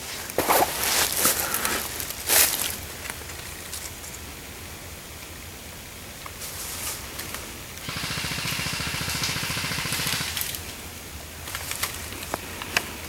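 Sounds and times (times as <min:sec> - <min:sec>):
airsoft rifle automatic fire: 0:07.8 - 0:10.6.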